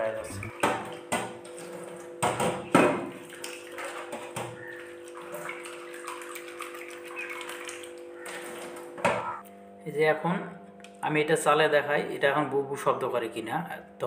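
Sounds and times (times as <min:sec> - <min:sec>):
tap water running: 0:00.0 - 0:09.4.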